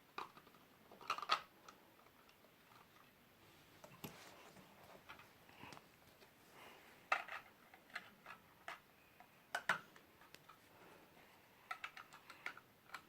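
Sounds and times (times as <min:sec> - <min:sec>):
plastic pieces clicking: 0:00.1 - 0:03.1, 0:07.1 - 0:10.6, 0:11.6 - 0:13.0.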